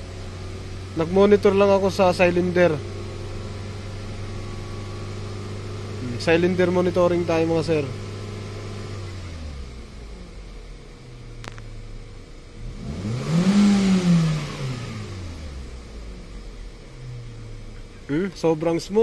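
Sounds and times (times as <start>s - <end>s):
car engine idling and revving: 0.0s - 19.0s.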